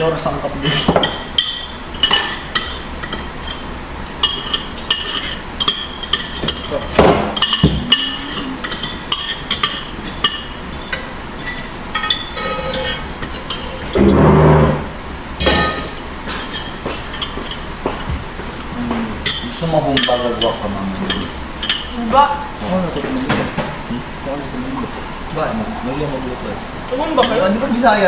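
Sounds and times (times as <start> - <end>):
cutlery clinking on plates: 0.6 - 14.3, 15.4 - 18.2, 19.2 - 21.9.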